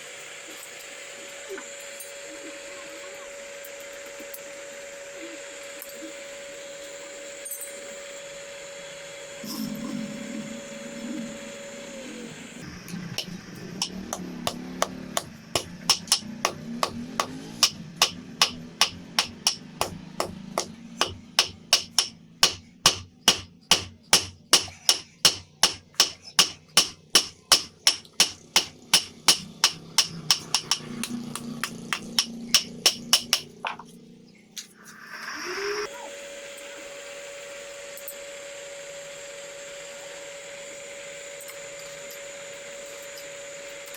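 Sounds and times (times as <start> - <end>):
hammer striking iron on anvil: 13.2 - 33.7.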